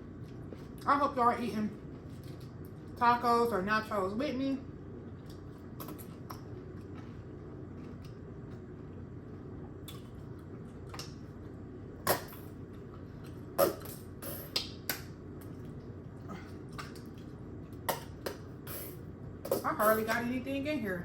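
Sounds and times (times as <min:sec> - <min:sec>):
steady low hum: 0:00.0 - 0:21.0
chips crunching when chewed: 0:05.2 - 0:08.7.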